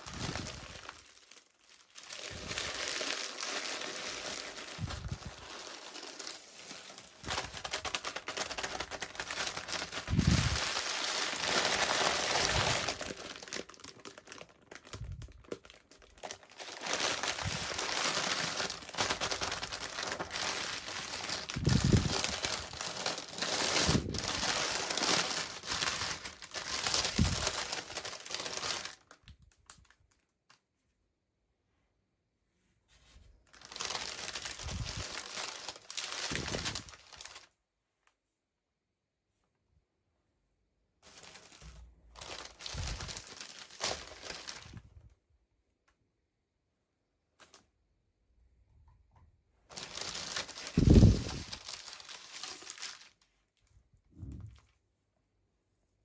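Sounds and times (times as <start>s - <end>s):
plastic wrapping crinkling: 0.0s - 30.6s, 33.4s - 37.5s, 41.0s - 44.9s, 49.7s - 53.7s.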